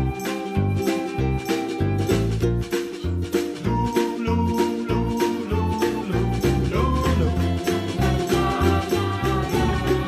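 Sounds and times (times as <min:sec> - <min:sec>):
upbeat music with bouncy bass: 0:00.0 - 0:10.0.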